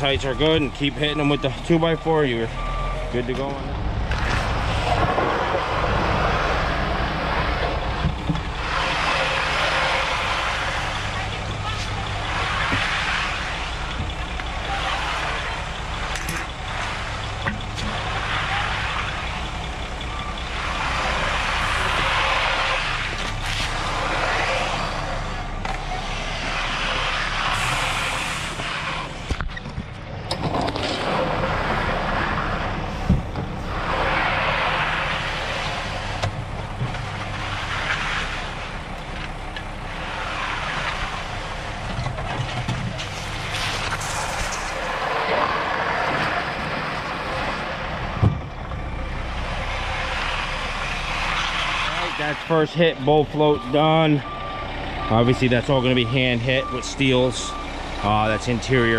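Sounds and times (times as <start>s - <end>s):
diesel engine running: 0.0s - 58.9s
hiss of concrete being worked: 26.4s - 29.1s.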